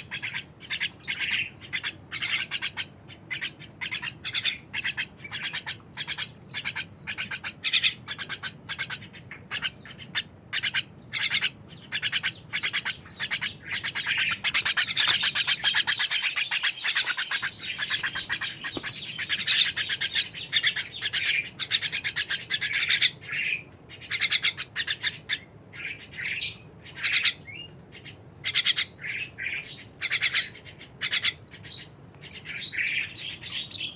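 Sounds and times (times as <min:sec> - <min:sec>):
songbird chirping: 0:00.0 - 0:33.9.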